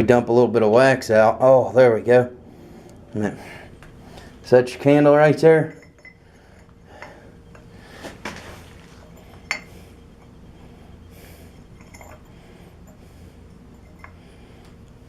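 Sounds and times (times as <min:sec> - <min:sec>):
faint low hum: 0:00.0 - 0:15.0
candle clinking in iron holder: 0:05.6 - 0:07.7, 0:08.7 - 0:10.4, 0:11.5 - 0:14.2.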